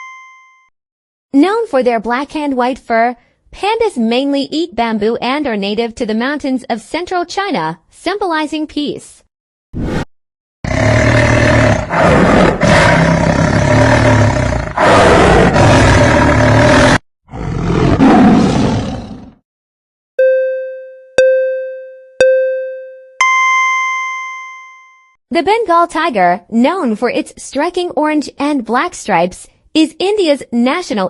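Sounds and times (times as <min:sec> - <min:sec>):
tiger roaring and growling: 0:10.7 - 0:19.4.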